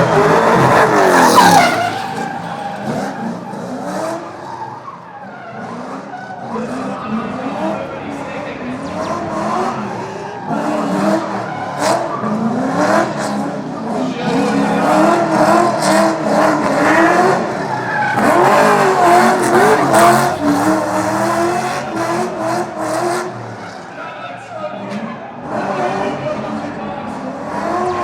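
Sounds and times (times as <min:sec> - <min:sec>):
car engine revving hard: 0:00.0 - 0:04.4, 0:08.6 - 0:23.6
tyres squealing and skidding: 0:00.0 - 0:28.0.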